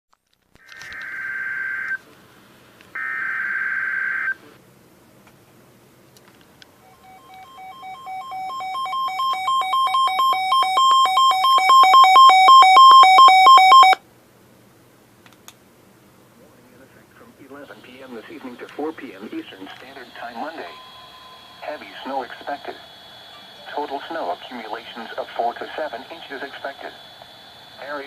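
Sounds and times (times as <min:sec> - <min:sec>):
pulsing two-tone alert tone: 0:06.9 - 0:14.0, 0:20.0 - 0:23.6
harsh digital data bursts: 0:17.7 - 0:28.0.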